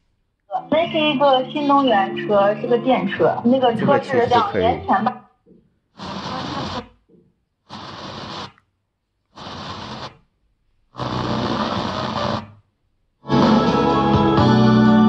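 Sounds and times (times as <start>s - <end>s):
guitar music on radio: 0.5s - 5.1s, 6.0s - 6.8s, 7.7s - 8.5s, 9.4s - 10.2s, 11.0s - 12.6s, 13.2s - 15.0s
radio broadcast snatches: 3.2s - 5.1s, 6.0s - 7.0s, 7.6s - 8.6s, 9.3s - 10.3s, 10.9s - 12.6s.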